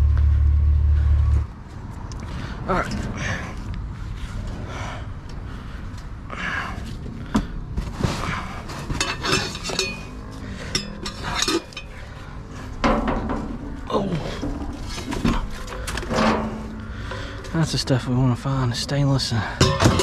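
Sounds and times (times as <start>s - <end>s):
scrap metal clanking and rattling: 7.8s - 20.0s
sharp metallic knocks: 12.8s - 13.9s, 19.6s - 20.0s.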